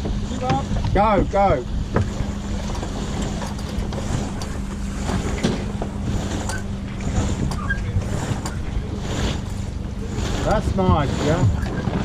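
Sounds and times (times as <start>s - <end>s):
steady low hum: 0.0s - 12.0s
water rushing past hull: 0.0s - 12.0s
wind buffeting microphone: 0.0s - 12.0s
short high squeaks: 6.2s - 9.4s.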